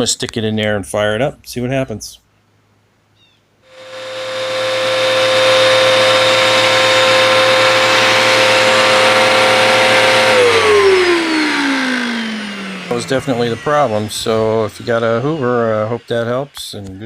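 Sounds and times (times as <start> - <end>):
vacuum cleaner motor whining: 3.7 - 17.0.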